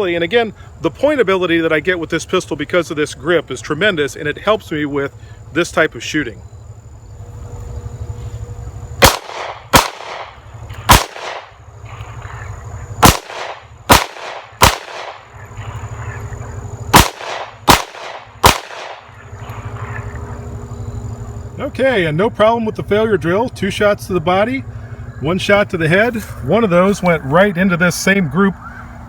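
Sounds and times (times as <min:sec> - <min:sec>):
pistol shots with echo: 0:09.0 - 0:11.6, 0:13.0 - 0:15.4, 0:16.9 - 0:19.1.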